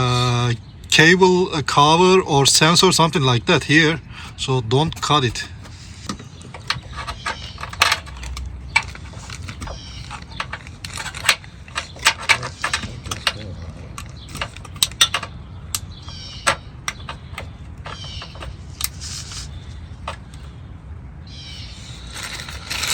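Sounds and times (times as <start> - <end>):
hand tools clicking and knocking: 3.7 - 20.5, 22.0 - 22.9
rattling runs of fast clicks: 4.9 - 19.4.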